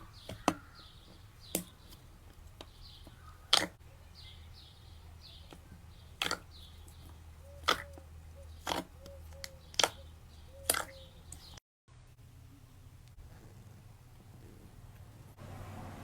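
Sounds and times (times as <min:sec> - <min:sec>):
slime squelching: 0:00.0 - 0:11.6
slime popping: 0:03.5 - 0:03.8, 0:06.2 - 0:06.5.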